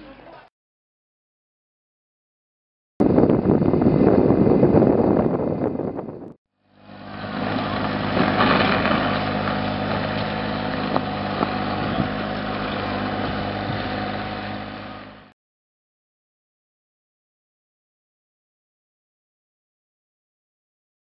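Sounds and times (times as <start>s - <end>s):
engine running steadily: 3.0s - 15.3s.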